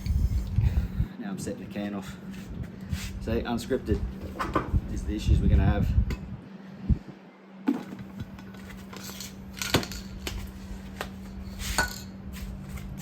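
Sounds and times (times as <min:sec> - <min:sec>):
steady low hum: 0:00.0 - 0:13.0
objects clicking and knocking: 0:07.7 - 0:11.1.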